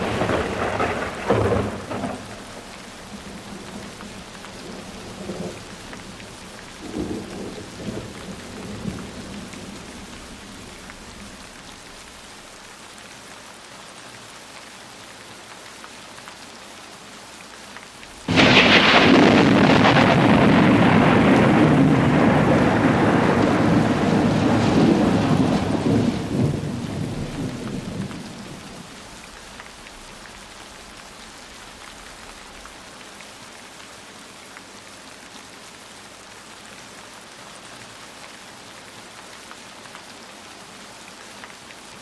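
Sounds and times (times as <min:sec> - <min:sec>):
thunder rumbling: 0:00.0 - 0:12.1, 0:18.2 - 0:30.6
heavy downpour: 0:00.0 - 0:42.0
steady rain: 0:00.0 - 0:42.0.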